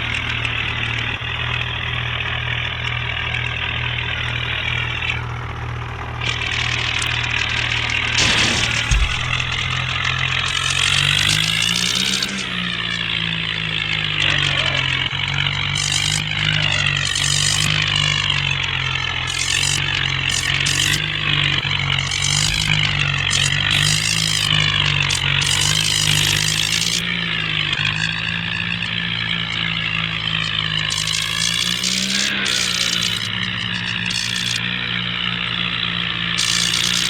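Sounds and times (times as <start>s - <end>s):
bulldozer engine drone: 0.0s - 37.0s
wavering high whine: 8.2s - 15.1s.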